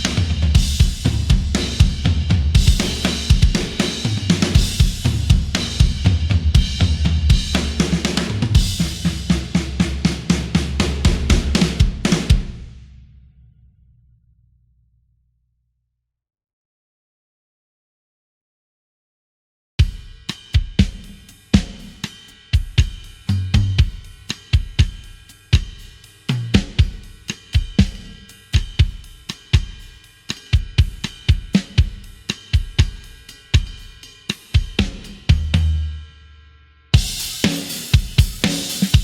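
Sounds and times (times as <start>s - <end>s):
rock drum kit groove: 0.0s - 13.0s, 19.8s - 36.1s, 36.9s - 39.0s
crashing cymbals: 20.2s - 26.3s, 37.0s - 39.0s.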